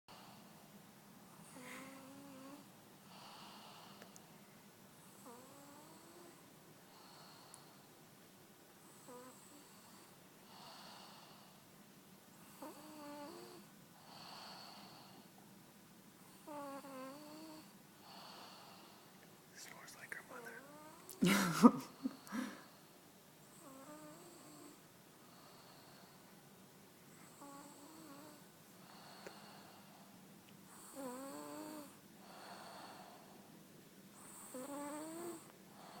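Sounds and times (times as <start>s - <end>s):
wheezy snores: 1.4s - 4.1s, 5.0s - 7.9s, 8.8s - 11.6s, 12.4s - 15.3s, 16.3s - 19.1s, 23.5s - 26.2s, 27.1s - 30.1s, 30.7s - 33.3s, 34.2s - 36.0s
breathing: 1.5s - 2.0s, 3.1s - 4.3s, 6.9s - 7.9s, 10.5s - 11.7s, 14.0s - 15.3s, 18.0s - 19.2s, 22.1s - 23.0s, 25.2s - 26.4s, 28.8s - 30.2s, 32.2s - 33.6s, 35.4s - 36.0s.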